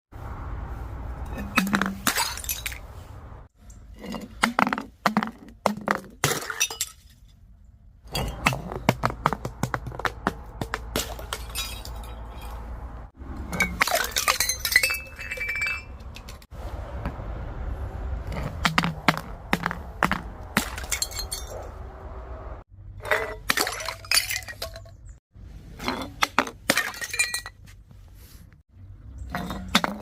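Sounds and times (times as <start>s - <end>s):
glass bottles breaking and crunching: 1.3s - 2.8s, 4.0s - 7.4s, 8.1s - 9.1s, 10.9s - 12.6s, 13.4s - 16.5s, 18.4s - 21.6s, 23.0s - 25.0s, 25.8s - 27.7s.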